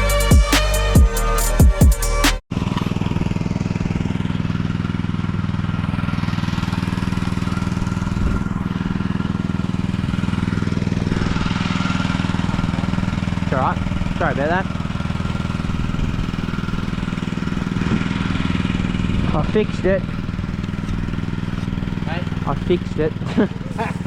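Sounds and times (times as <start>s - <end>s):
music: 0.0s - 2.4s
machine engine running: 0.0s - 24.0s.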